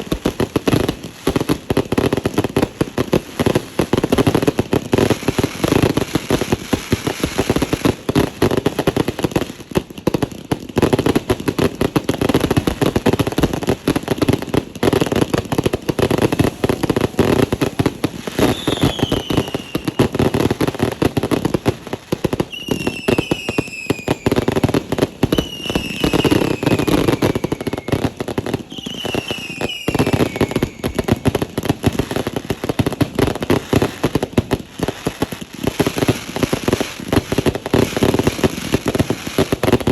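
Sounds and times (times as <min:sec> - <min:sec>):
fireworks crackling and banging: 0:00.0 - 0:39.9
falling firework whistles: 0:14.2 - 0:21.1, 0:22.3 - 0:33.0.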